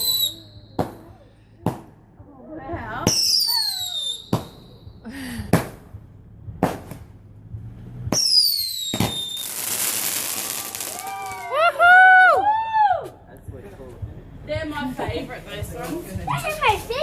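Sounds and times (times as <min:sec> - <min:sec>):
whistling firework rocket: 0:00.0 - 0:01.0, 0:03.1 - 0:04.8, 0:08.1 - 0:11.6
firework bangs: 0:00.0 - 0:02.0, 0:03.0 - 0:07.2, 0:08.0 - 0:11.6
firework crackling hiss: 0:08.1 - 0:11.6.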